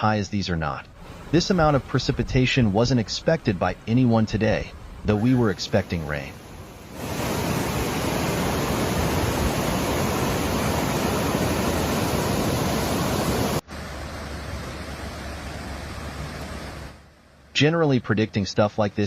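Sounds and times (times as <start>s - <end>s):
floodwater rushing: 5.0s - 17.0s.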